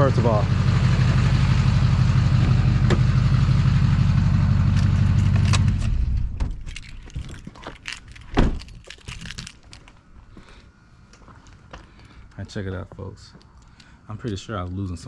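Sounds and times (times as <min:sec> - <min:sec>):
diesel truck engine idling: 0:00.0 - 0:05.8.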